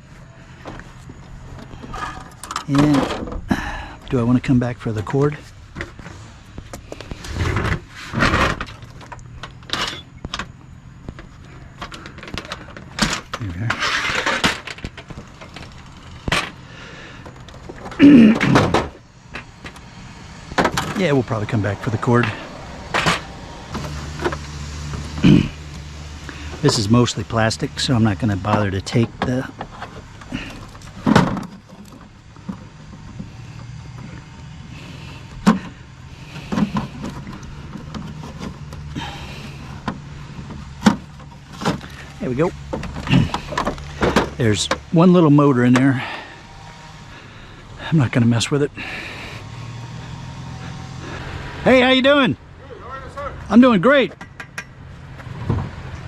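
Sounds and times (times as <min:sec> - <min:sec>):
vehicle engine idling: 0:00.0 - 0:56.0
scraping clatter: 0:00.6 - 0:03.5, 0:05.3 - 0:19.8, 0:28.4 - 0:44.9
sharp knocks and clunks: 0:17.2 - 0:19.8, 0:20.5 - 0:21.0, 0:22.2 - 0:25.8, 0:28.4 - 0:34.3, 0:35.2 - 0:44.9, 0:54.1 - 0:56.0
plastic knocks and clunks: 0:31.0 - 0:33.3, 0:39.8 - 0:41.9, 0:42.6 - 0:44.9.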